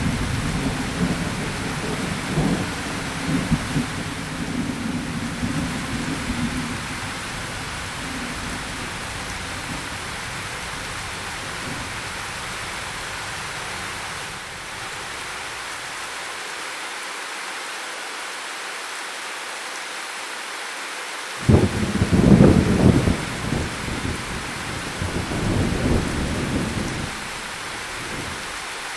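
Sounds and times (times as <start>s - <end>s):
loud thunderclap: 0.0s - 15.3s, 21.4s - 28.8s
low thunder rumble: 0.0s - 15.9s, 21.4s - 28.9s
steady rain falling: 0.0s - 28.9s.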